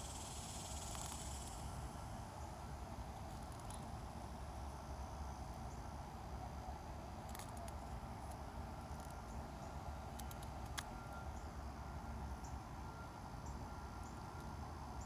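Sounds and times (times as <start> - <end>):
low rumble and hiss: 0.0 - 15.0.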